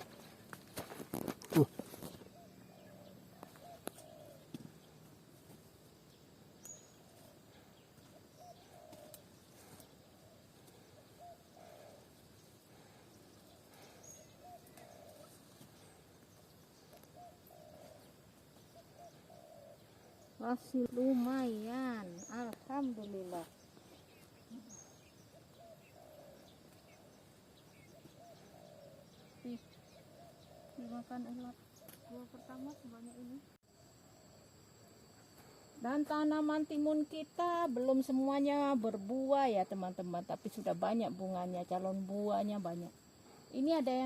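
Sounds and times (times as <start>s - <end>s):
small birds chirping: 0.0s - 39.3s
dove cooing: 1.0s - 4.8s, 7.0s - 16.0s, 16.8s - 20.4s, 24.4s - 34.5s.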